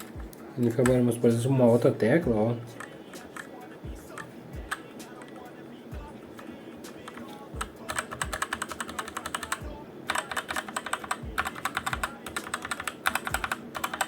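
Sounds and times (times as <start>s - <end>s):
mechanical keyboard typing: 2.8s - 3.5s, 7.0s - 14.0s.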